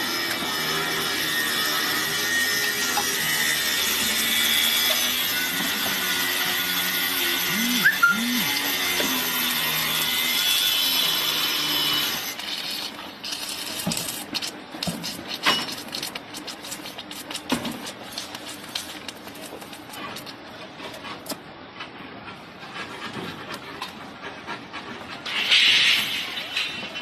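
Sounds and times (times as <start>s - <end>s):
arc welding crackle: 11.9s - 19.9s.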